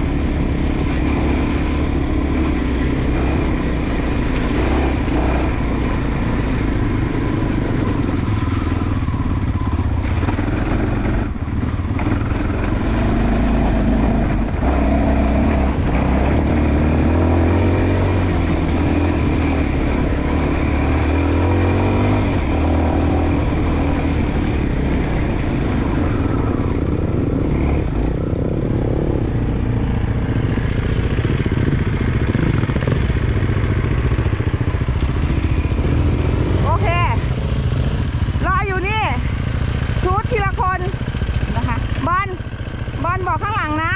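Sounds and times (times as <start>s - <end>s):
wind noise: 0.0s - 38.4s
dirt bike engine revving: 0.0s - 43.9s.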